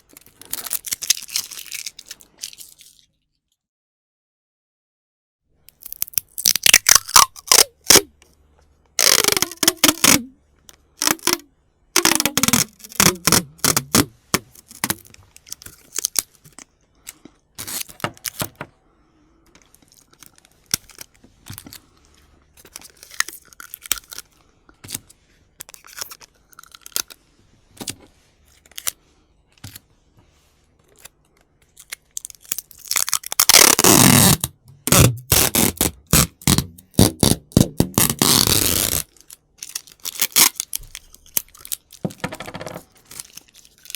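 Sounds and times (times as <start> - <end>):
tape crinkling and clicking: 0.0 - 3.1, 5.6 - 8.4, 9.0 - 11.4, 12.0 - 18.7, 19.5 - 29.9, 30.8 - 43.9
tape ripping off roll: 5.8 - 8.1, 9.0 - 10.3, 11.0 - 11.4, 12.0 - 16.2, 32.8 - 43.5.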